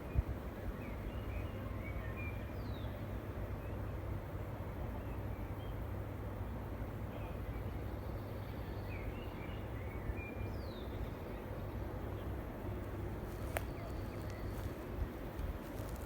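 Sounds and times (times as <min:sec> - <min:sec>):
forest birds chirping: 0:00.0 - 0:03.8, 0:07.2 - 0:16.0.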